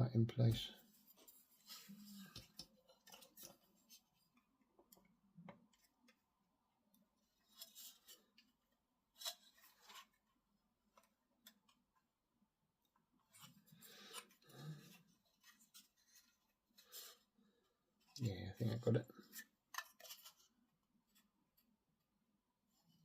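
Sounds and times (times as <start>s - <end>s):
plastic parts clicking and rustling: 19.2s - 20.6s.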